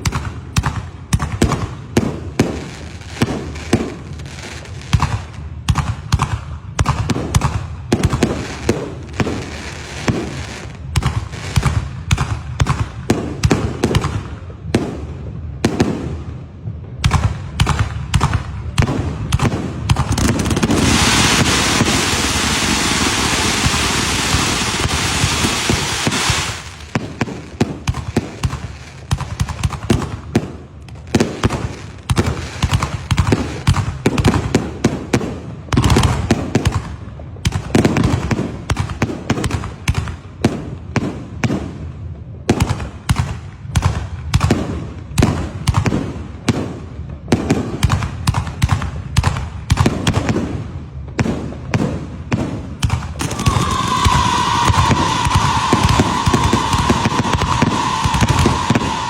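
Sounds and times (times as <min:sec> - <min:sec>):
fireworks bangs and cracks: 0:00.0 - 0:59.0
fireworks hissing spray: 0:20.4 - 0:27.0, 0:53.2 - 0:59.0.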